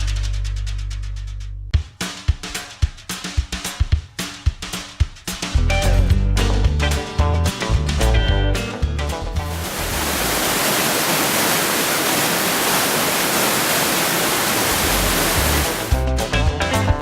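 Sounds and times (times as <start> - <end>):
guitar background music: 5.5 - 9.7, 15.8 - 17.0
waterfall rushing: 9.4 - 16.0.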